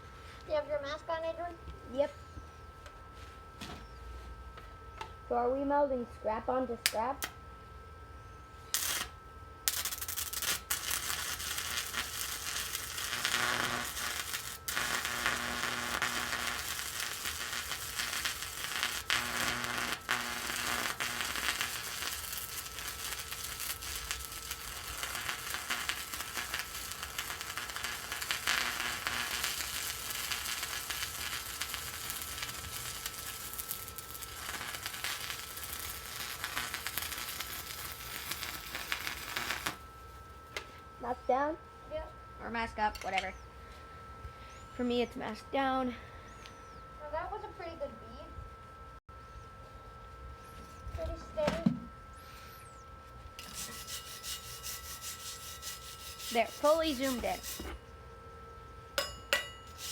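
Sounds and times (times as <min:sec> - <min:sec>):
welding arc crackling: 0:08.7 - 0:39.8, 0:53.4 - 0:57.8, 0:59.0 - 0:59.9.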